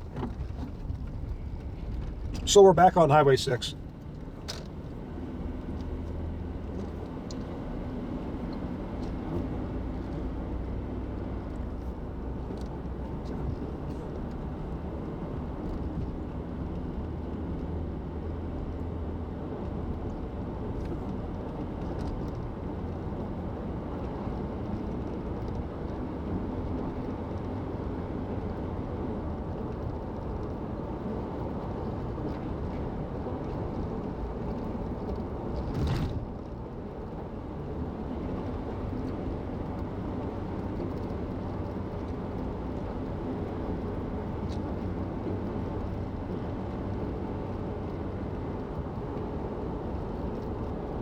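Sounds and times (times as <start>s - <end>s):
car engine drone: 0.0s - 10.8s.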